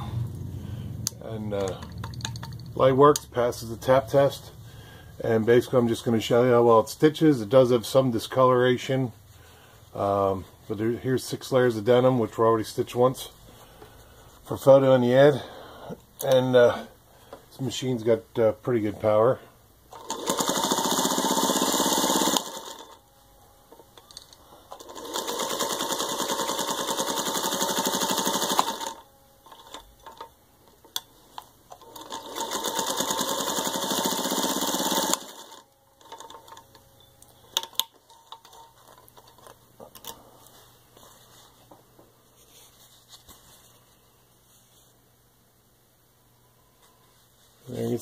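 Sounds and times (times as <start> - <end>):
sewing machine stitching: 19.9 - 23.0, 24.7 - 30.2, 31.7 - 36.6
clicks and handling sounds: 23.7 - 24.9, 36.0 - 43.8.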